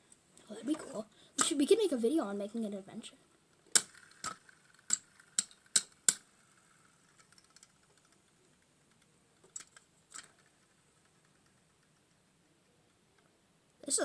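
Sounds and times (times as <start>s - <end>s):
plastic parts clicking: 3.5s - 12.2s.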